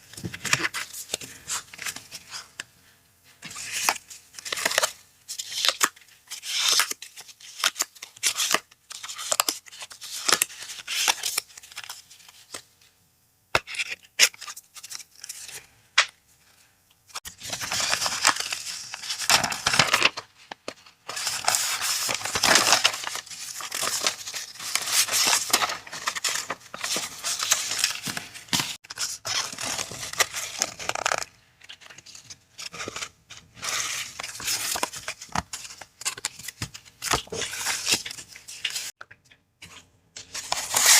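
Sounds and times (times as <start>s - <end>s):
paper rustling and crinkling: 17.1s - 39.0s, 39.6s - 40.9s.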